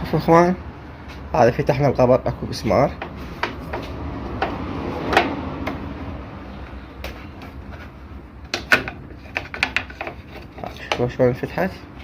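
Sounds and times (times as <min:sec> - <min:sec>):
casing parts clicking and knocking: 0:02.9 - 0:05.9, 0:06.6 - 0:11.3.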